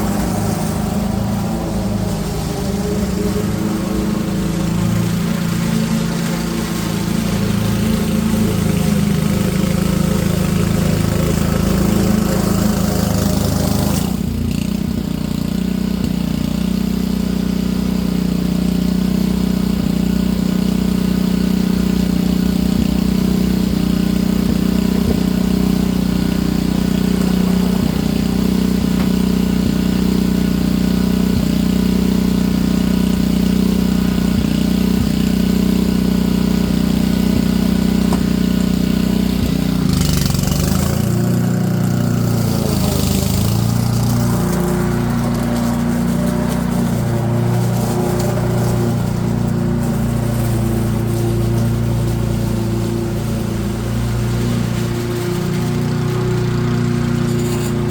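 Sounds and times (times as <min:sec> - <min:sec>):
airy rushing: 0:00.0 - 0:14.2
small petrol engine running: 0:00.0 - 0:57.9.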